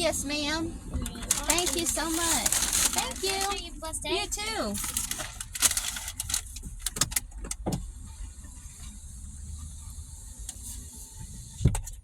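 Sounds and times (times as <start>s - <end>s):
steady low rumble: 0.0s - 11.6s.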